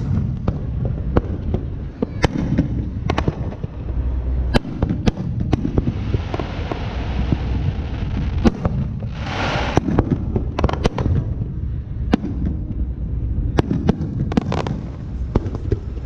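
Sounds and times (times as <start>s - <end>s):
fireworks bangs and crackling pops: 0.0s - 3.9s, 4.5s - 16.0s
low rumble: 2.9s - 10.7s
firework hiss: 5.5s - 10.1s.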